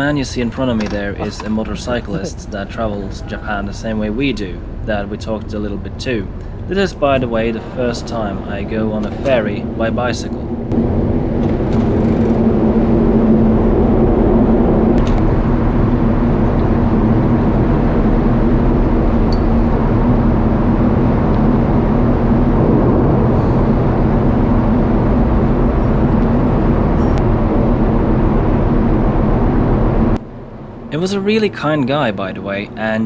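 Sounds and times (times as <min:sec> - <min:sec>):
engine drone: 0:00.0 - 0:33.0.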